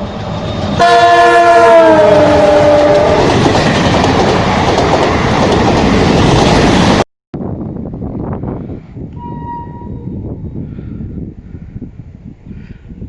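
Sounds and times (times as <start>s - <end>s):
train wheels running on track: 0.0s - 7.0s
train horn blaring: 0.8s - 3.5s, 9.2s - 10.2s.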